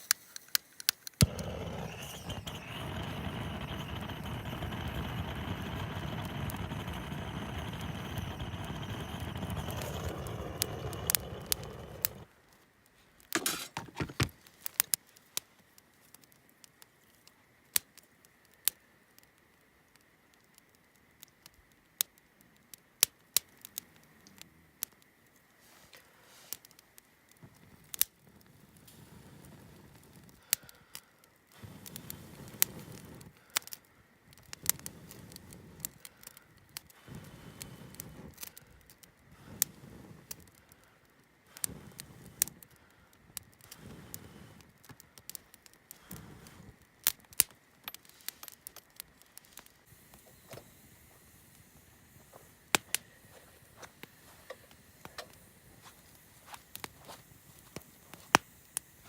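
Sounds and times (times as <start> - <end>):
campfire crackling: 0.0 - 59.0
low steady rumble: 1.2 - 12.3.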